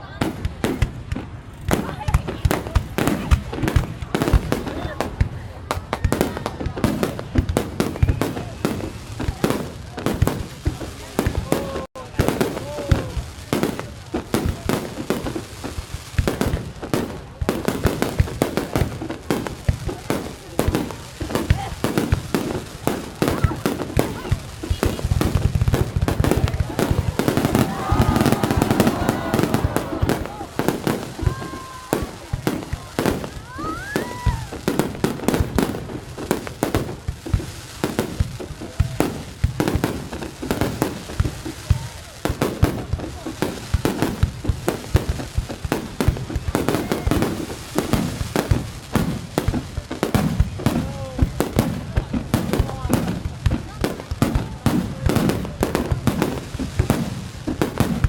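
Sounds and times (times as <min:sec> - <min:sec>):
firework bangs: 0:00.0 - 0:58.0
low rumble of distant fireworks: 0:00.0 - 0:58.0
rising firework whistle: 0:26.7 - 0:32.2, 0:33.4 - 0:34.6.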